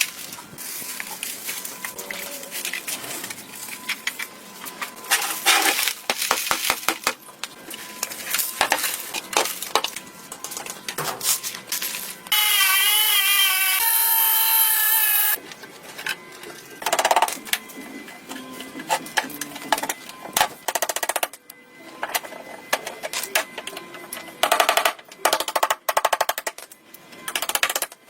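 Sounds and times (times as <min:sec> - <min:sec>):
loud wavering whirring tone: 0:00.0 - 0:06.1, 0:07.2 - 0:20.4
tools scraping and clicking: 0:01.0 - 0:12.1.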